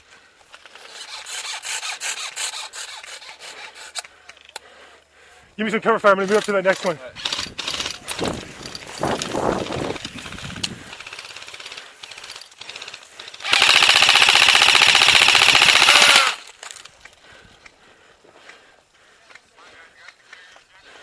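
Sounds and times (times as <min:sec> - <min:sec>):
airsoft rifle full-auto burst: 0:00.8 - 0:04.0, 0:07.2 - 0:08.0, 0:09.9 - 0:16.6.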